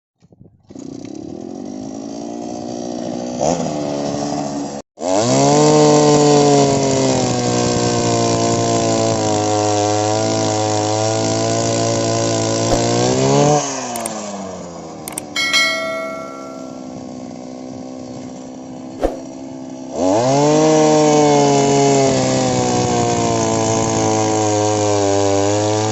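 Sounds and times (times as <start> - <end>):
small petrol engine revving: 0.8 - 12.5, 19.8 - 25.9
short metallic ringing: 15.1 - 16.9.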